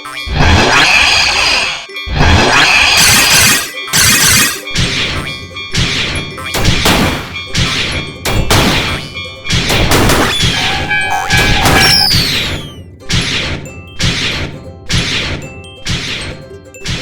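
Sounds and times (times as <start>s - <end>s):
music: 0.0s - 17.0s
cartoon crashes and thuds: 0.1s - 17.0s
falling whistle-like glides: 10.3s - 12.8s.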